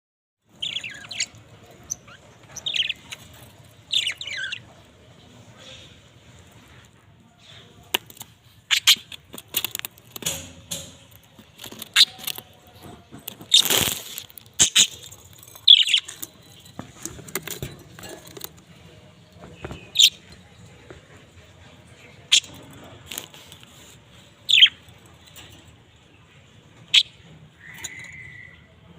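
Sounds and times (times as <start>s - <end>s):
budgerigars chirping: 0.6s - 4.7s, 8.7s - 9.2s, 14.6s - 16.3s, 24.4s - 24.9s
wings fluttering: 13.2s - 18.5s.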